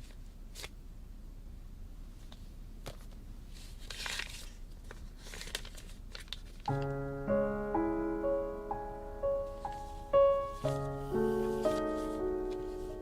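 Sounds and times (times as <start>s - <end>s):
low room hum: 0.0s - 13.0s
soft rustling and crinkling: 2.1s - 6.9s, 9.5s - 13.0s.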